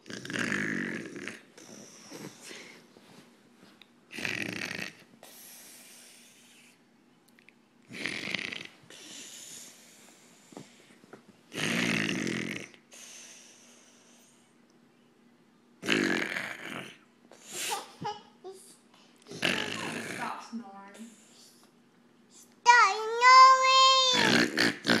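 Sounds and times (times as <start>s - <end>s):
woman snoring: 7.9s - 9.3s, 19.3s - 20.4s.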